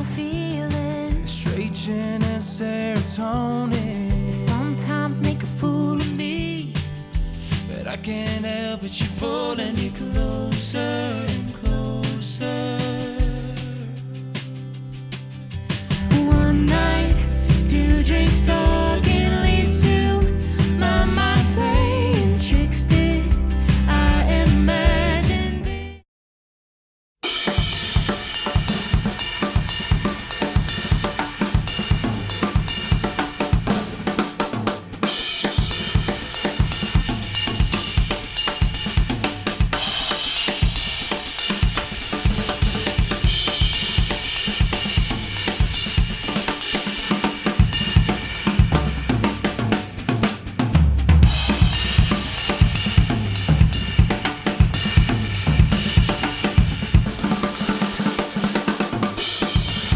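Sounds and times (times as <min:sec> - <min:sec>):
drum kit playing a steady beat: 0:00.0 - 0:25.6, 0:27.2 - 0:59.9
instrumental music: 0:27.2 - 0:59.9.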